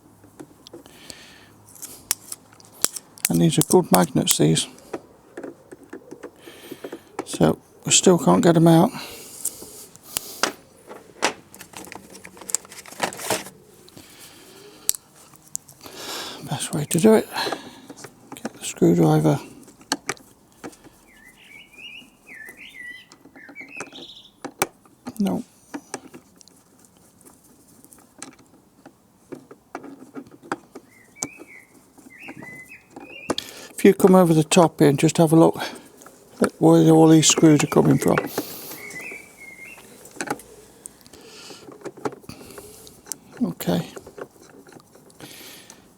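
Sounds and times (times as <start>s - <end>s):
screwdriver clicking on plastic: 1.8s - 4.2s, 4.8s - 7.4s, 37.4s - 45.9s
bird chirping: 20.8s - 25.4s, 30.7s - 41.6s.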